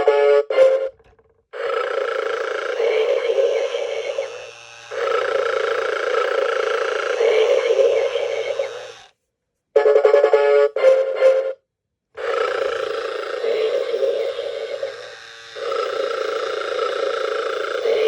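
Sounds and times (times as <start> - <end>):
electronic snoring sound: 1.6 - 9.1, 12.2 - 18.0.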